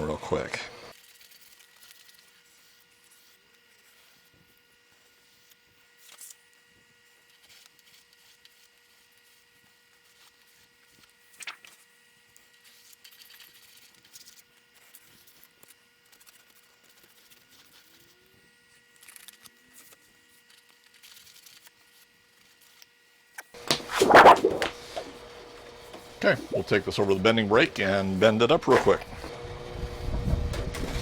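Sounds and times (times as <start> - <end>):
hand scraping sheet metal edges: 23.6 - 25.2.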